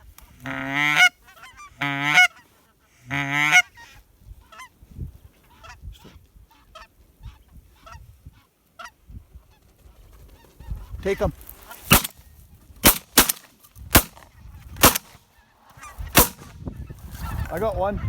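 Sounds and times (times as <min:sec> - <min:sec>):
geese honking: 0:00.4 - 0:04.7.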